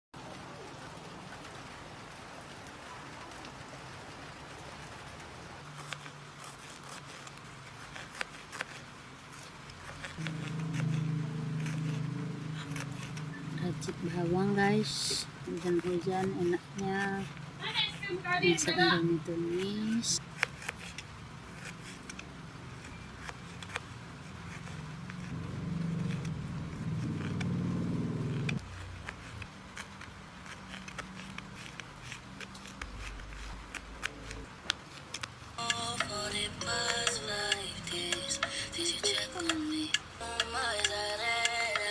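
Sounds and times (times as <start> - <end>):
steady rain hiss: 0.2 - 7.8, 8.8 - 20.4
low motor hum: 9.7 - 20.2, 22.4 - 29.8
low hum: 10.2 - 16.6.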